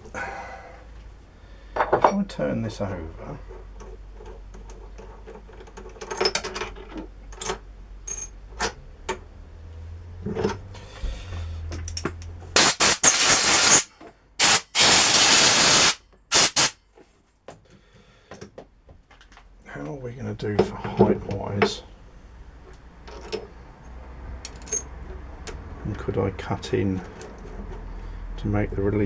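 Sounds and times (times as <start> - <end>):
metal clinks and knocks: 3.4 - 9.3, 10.2 - 10.7, 22.7 - 25.6
compressed air blow gun hissing: 12.6 - 16.8.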